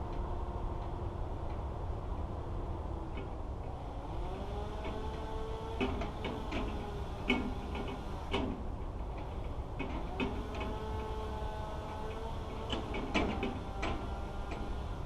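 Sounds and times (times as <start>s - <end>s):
engine humming: 0.0s - 15.0s
sharp knocks and clicks: 4.8s - 11.2s, 11.9s - 14.8s.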